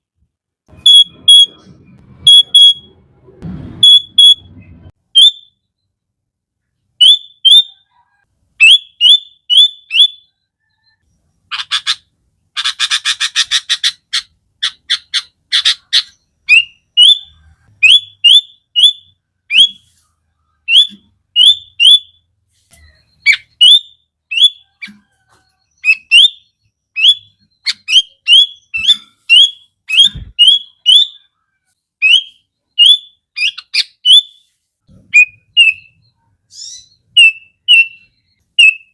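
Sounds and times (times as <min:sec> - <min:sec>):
bird harsh chattering rattle: 0:11.5 - 0:19.7.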